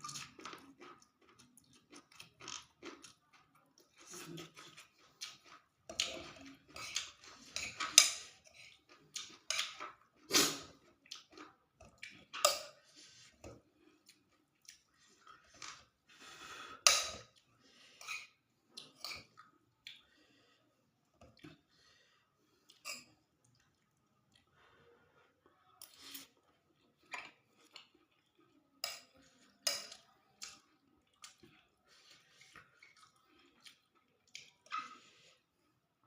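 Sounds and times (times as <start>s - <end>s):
mouth chewing food: 0.0s - 16.3s, 25.3s - 35.4s.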